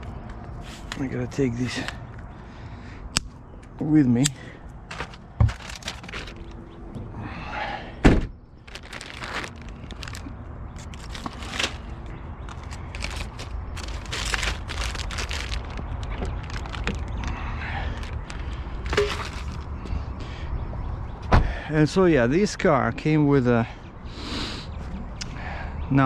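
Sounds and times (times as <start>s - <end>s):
handling knocks and rustling: 4.9s - 6.7s, 8.7s - 19.7s
loud thump: 8.0s - 8.3s.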